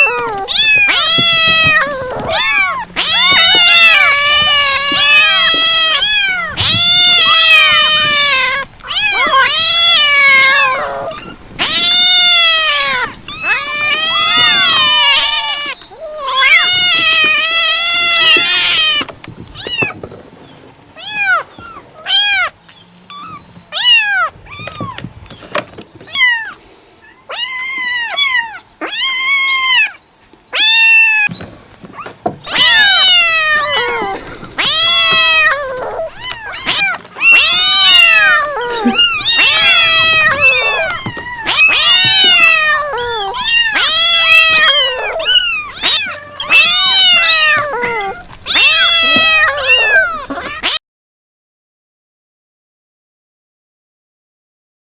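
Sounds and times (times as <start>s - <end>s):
cats meowing: 0.0s - 20.3s, 20.9s - 50.8s.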